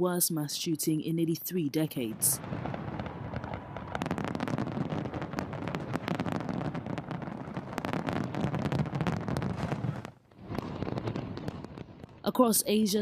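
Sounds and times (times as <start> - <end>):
fireworks bangs and crackles: 2.0 - 13.0.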